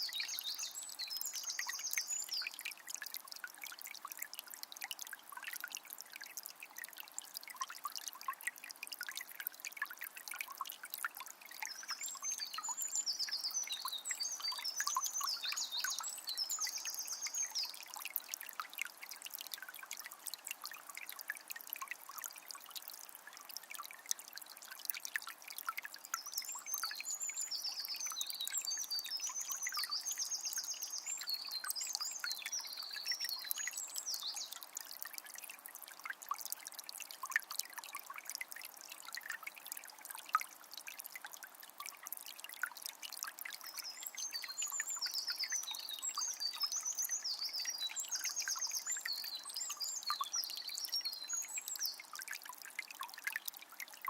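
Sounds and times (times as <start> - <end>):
songbird singing high chirps: 0.0 - 2.6, 11.6 - 17.9, 26.2 - 34.6, 43.7 - 52.0
water trickling and splashing: 0.0 - 54.0.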